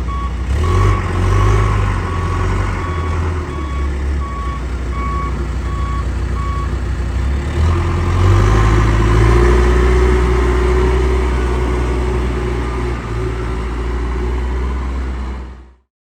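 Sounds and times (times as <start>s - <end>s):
backup alarm beeping: 0.0s - 6.7s
diesel engine running: 0.0s - 15.8s.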